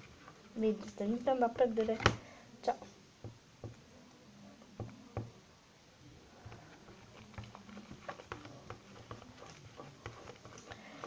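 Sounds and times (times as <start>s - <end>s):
slime being stirred: 6.1s - 11.0s.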